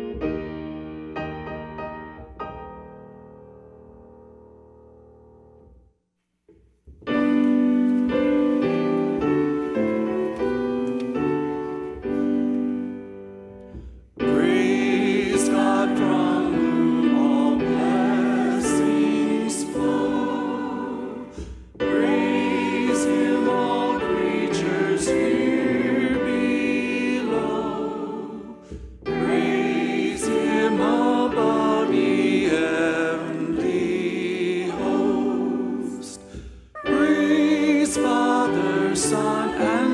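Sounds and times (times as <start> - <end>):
piano accompaniment: 0.0 - 5.9, 6.5 - 39.9
choir singing: 14.2 - 39.9.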